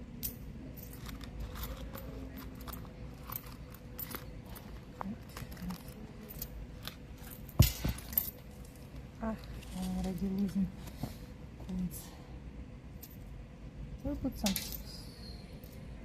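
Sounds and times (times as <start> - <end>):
coins clinking: 0.2 - 8.7, 14.2 - 15.9.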